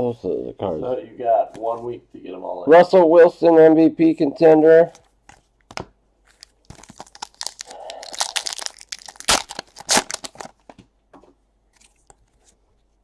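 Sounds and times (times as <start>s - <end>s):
card packaging crinkling: 5.4s - 10.8s.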